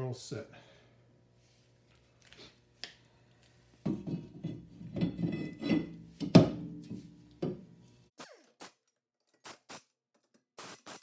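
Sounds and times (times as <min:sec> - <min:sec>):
metal clanking and knocking: 0:03.9 - 0:07.7.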